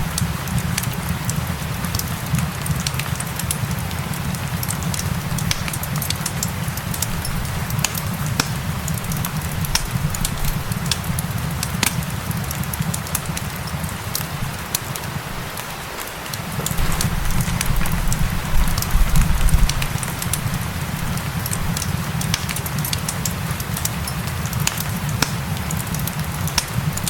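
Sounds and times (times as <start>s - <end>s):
falling rain: 0.0s - 27.0s
wood fire crackling and popping: 0.0s - 27.0s.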